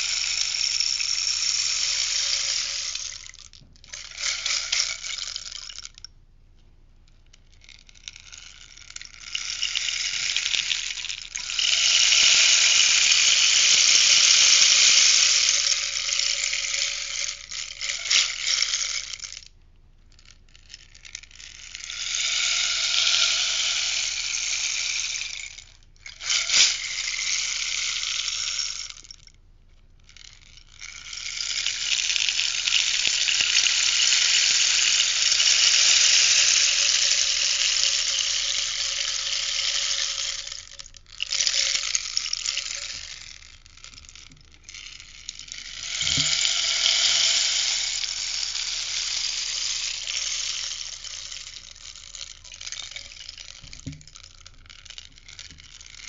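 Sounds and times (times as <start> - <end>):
rainstick pellets cascading: 0.0 - 6.1, 7.5 - 19.5, 20.1 - 29.3, 30.1 - 56.0.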